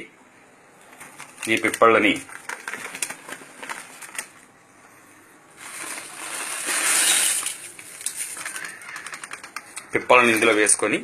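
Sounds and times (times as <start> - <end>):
dried peppers rattling into pan: 0.9 - 4.4, 5.6 - 11.0.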